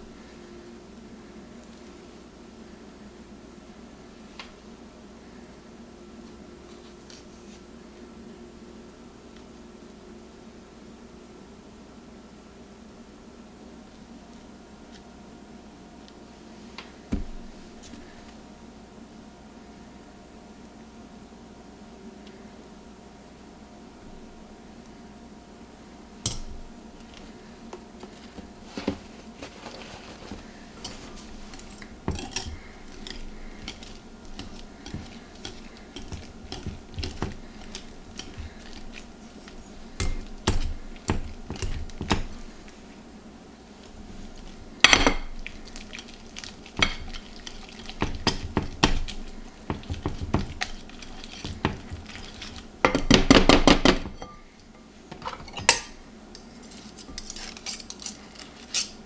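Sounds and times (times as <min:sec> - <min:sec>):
utensils clinking against dishes: 0:26.3 - 0:27.3, 0:28.3 - 0:42.8, 0:44.2 - 0:59.0
rapid stirring in a bowl: 0:26.3 - 0:56.0.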